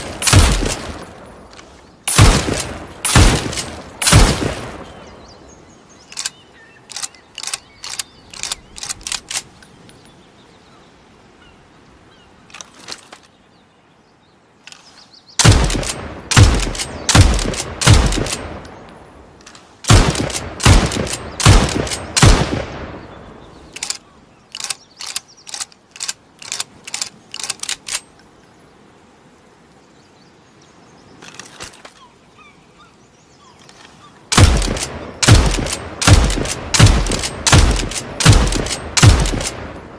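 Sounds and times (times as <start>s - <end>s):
rifle gunshots: 0.0s - 1.1s, 2.1s - 4.9s, 15.4s - 18.6s, 19.9s - 23.1s, 34.3s - 39.8s
rifle action clicking: 1.6s - 4.6s, 6.1s - 9.6s, 23.7s - 28.0s, 33.7s - 39.6s.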